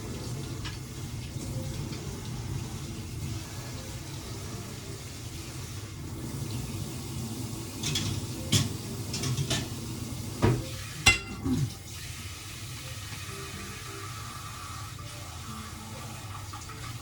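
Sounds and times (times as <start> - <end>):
kitchenware clattering: 7.7 - 11.8.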